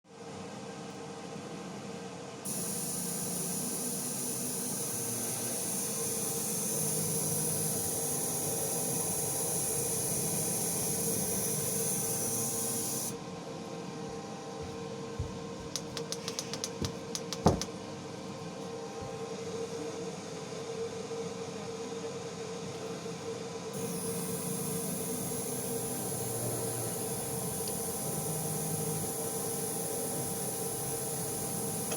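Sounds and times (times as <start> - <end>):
laser cutter humming: 2.5 - 13.2, 23.8 - 31.9
sharp clicks: 15.8 - 17.7.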